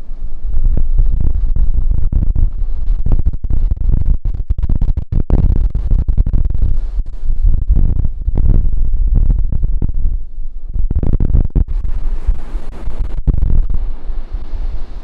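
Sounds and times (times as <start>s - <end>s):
wind buffeting microphone: 0.0s - 15.0s
ocean surf: 13.8s - 15.0s.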